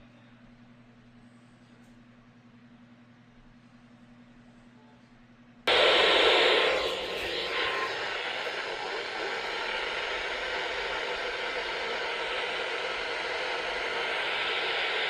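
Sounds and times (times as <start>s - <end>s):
faint steady tone: 5.7s - 15.0s
radio static hiss: 5.7s - 15.0s.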